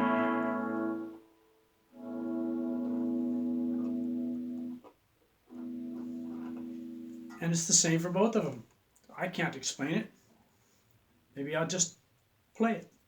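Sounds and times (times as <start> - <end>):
electric guitar chord ringing: 0.0 - 4.8, 5.5 - 7.4.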